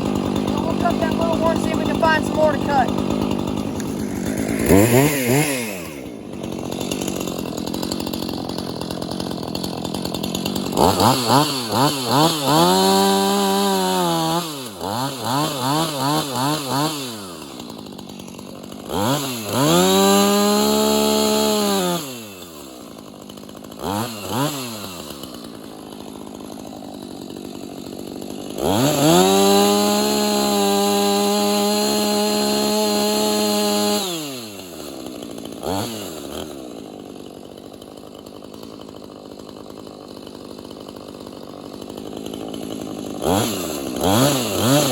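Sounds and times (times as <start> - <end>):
chainsaw revving and idling: 0.0 - 44.9.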